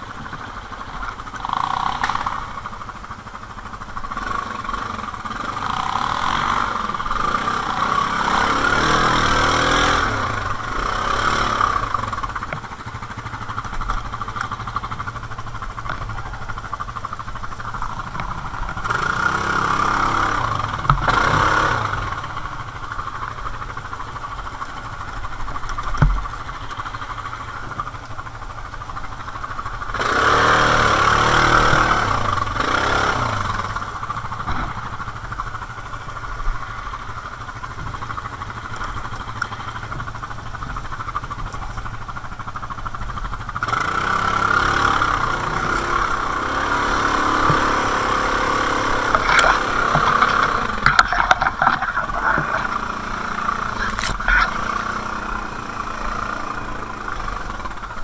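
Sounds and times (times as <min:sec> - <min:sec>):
atv engines revving: 0:00.0 - 0:58.0.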